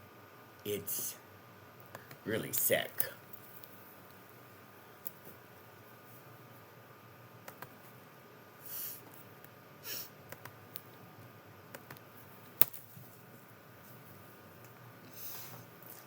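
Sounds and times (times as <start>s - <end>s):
hissing breaths: 9.8s - 10.2s.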